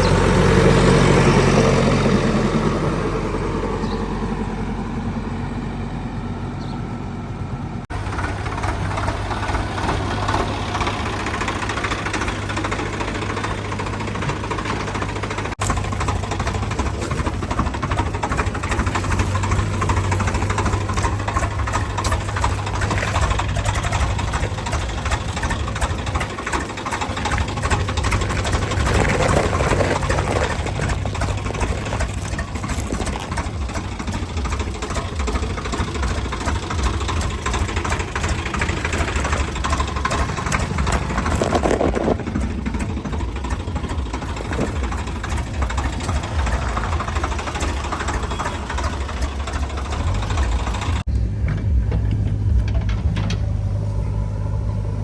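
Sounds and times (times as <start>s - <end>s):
diesel engine knocking rumble: 0.0s - 55.0s.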